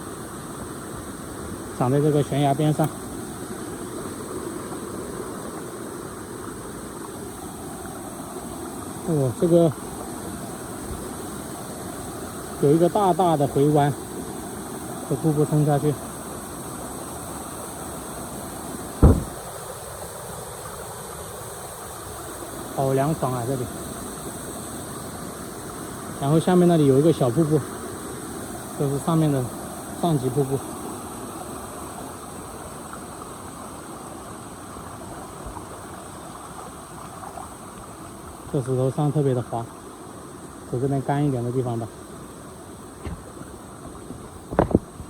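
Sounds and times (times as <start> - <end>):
small waterfall rushing: 0.0 - 45.0
dull thump: 19.0 - 19.5, 43.0 - 43.5, 44.5 - 44.9
waterfall water rushing: 19.0 - 19.6.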